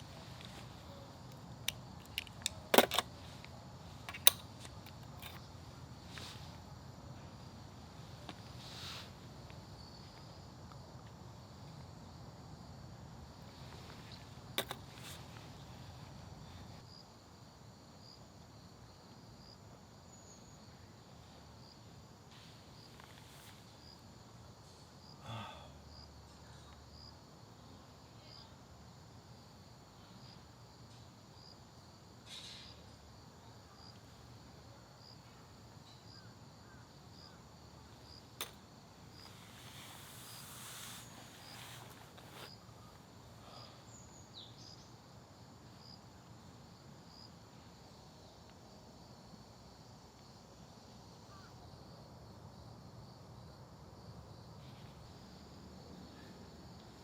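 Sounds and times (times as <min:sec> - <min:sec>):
insect chirping: 0:00.0 - 0:57.0
sharp clicks and knocks: 0:01.7 - 0:03.1, 0:04.1 - 0:05.4, 0:14.6 - 0:14.8.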